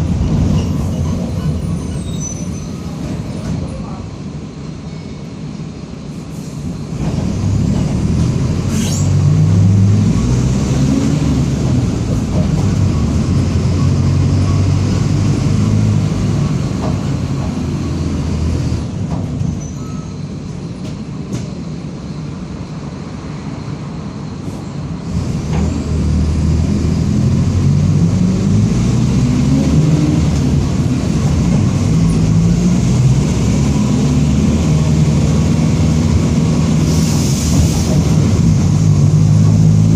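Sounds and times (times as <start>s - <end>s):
bus diesel engine accelerating: 0.0s - 39.9s
short air hisses: 36.8s - 38.0s.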